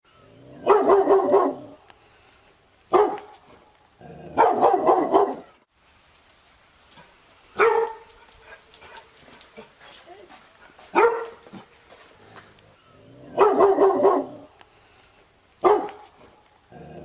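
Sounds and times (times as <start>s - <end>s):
dog barking: 0.6s - 1.8s, 2.9s - 3.3s, 4.4s - 5.6s, 7.6s - 8.1s, 10.9s - 11.4s, 13.3s - 14.5s, 15.6s - 16.0s.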